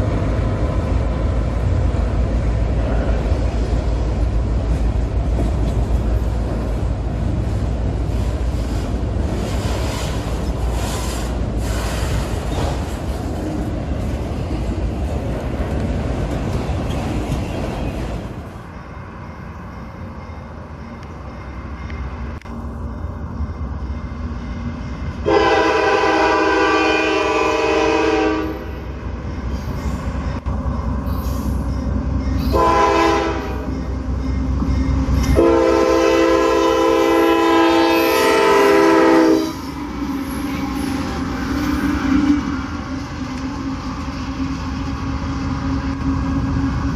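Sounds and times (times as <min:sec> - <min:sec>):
train rumbling past: 0:00.0 - 0:46.9
locomotive horn blast: 0:25.2 - 0:28.8, 0:32.4 - 0:33.7, 0:35.2 - 0:39.7.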